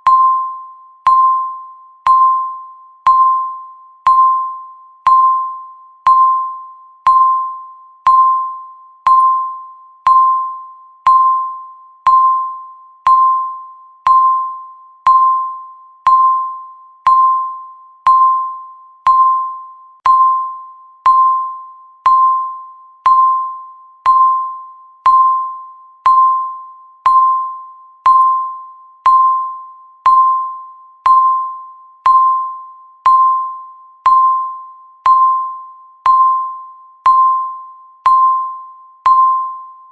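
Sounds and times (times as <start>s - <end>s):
timer beeping: 0.0s - 39.9s.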